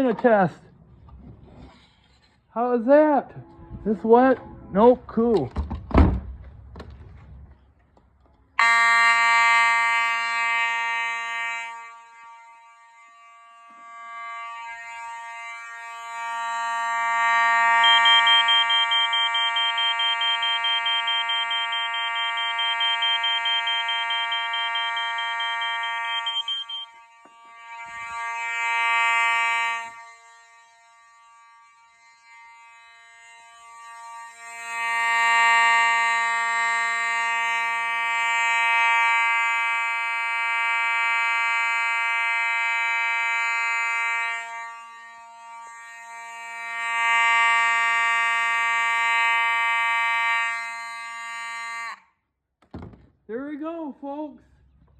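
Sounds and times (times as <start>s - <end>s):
fire alarm horn buzzing: 3.4s - 4.9s, 8.6s - 52.2s.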